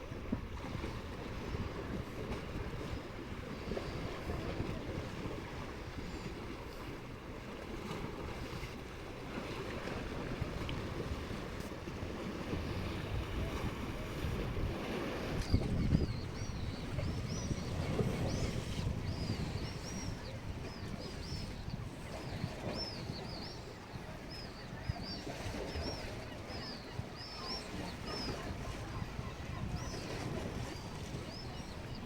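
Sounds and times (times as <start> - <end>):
small waves washing onto beach: 0.0 - 32.0
wind on microphone: 0.0 - 32.0.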